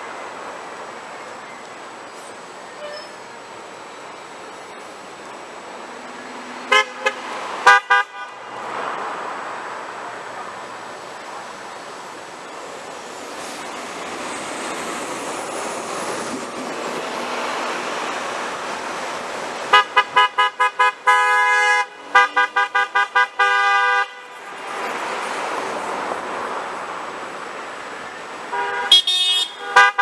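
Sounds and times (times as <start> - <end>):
passing car traffic: 0.0 - 30.0
car horn honking: 6.7 - 8.6, 19.7 - 24.9, 28.5 - 30.0.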